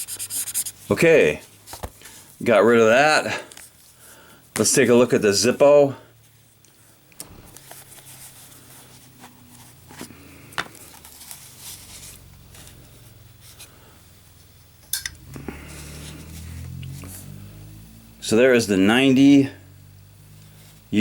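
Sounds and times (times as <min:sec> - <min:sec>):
box handling rubbing: 0:00.0 - 0:00.9, 0:07.2 - 0:12.7.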